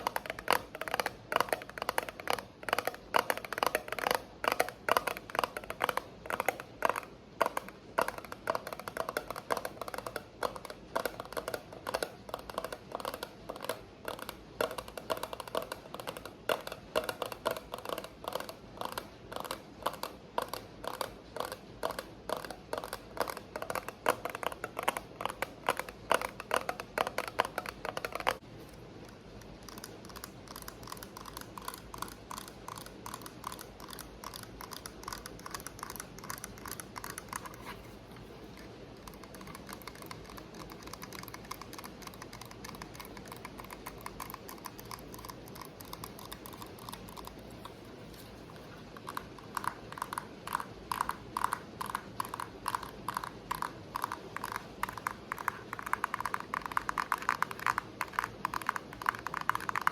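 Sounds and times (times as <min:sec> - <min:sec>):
fast tapping on object: 0:00.0 - 0:28.4, 0:29.4 - 0:59.9.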